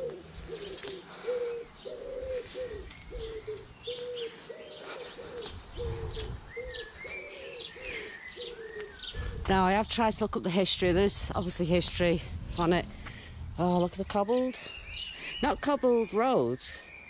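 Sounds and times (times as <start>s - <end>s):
pigeons cooing: 0.0s - 9.5s
small birds chirping: 0.0s - 17.0s.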